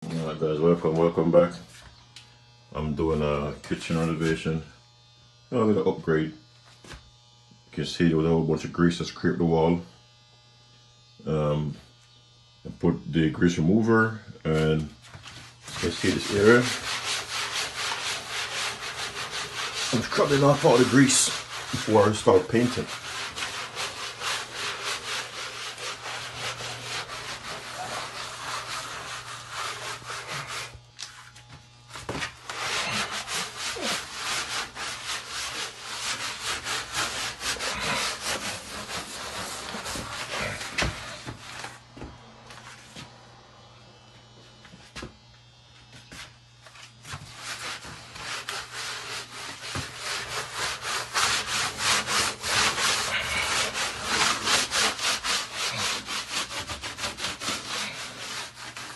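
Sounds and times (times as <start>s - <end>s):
hand scrubbing a wall: 2.8s - 4.7s, 14.5s - 43.1s, 45.8s - 58.9s.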